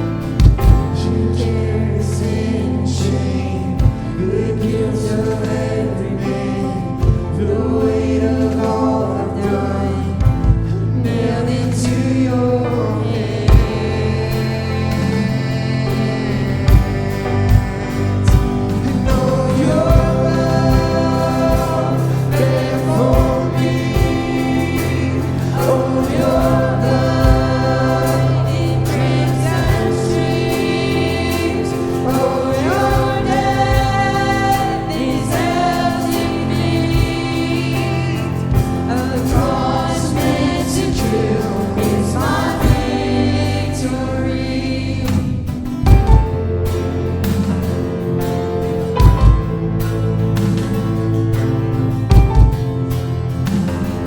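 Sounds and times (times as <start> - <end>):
voices singing a melody: 0.0 - 52.6
sustained instruments: 0.0 - 54.0
drum hits: 0.4 - 1.1, 10.2 - 10.9, 13.5 - 15.3, 16.5 - 43.4, 45.1 - 51.1, 52.0 - 54.0.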